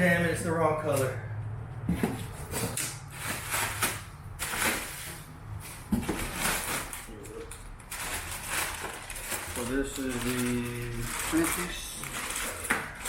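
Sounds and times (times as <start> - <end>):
packaging rustling: 2.2 - 13.0.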